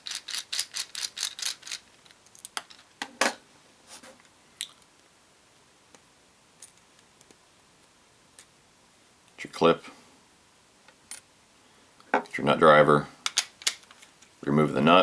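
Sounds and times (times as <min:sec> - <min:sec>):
small metal parts clicking: 0:00.0 - 0:02.9.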